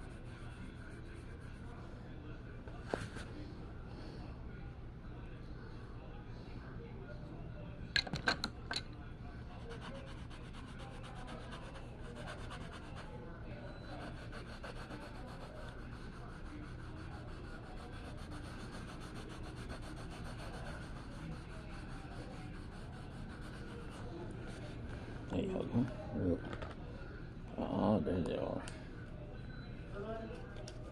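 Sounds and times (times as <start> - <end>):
drawing tool scratching paper: 14.0 - 24.0.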